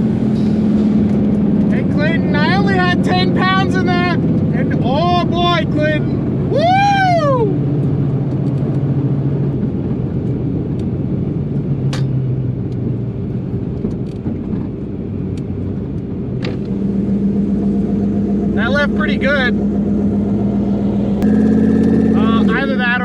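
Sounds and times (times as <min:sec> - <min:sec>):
car engine drone: 0:00.0 - 0:23.0
rising and falling tone: 0:16.6 - 0:22.6.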